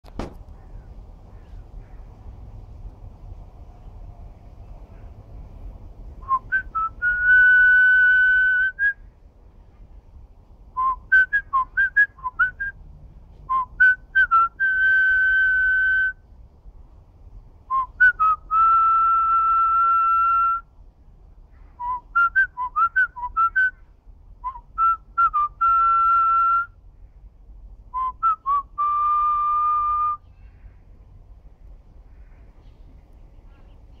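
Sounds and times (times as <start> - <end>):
person whistling a melody: 6.2 - 9.0, 10.8 - 12.7, 21.8 - 23.8, 24.4 - 26.7, 27.9 - 30.2.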